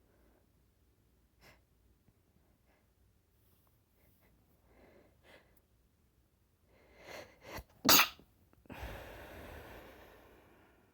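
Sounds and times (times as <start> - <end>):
woman sneezing: 7.9 - 8.2.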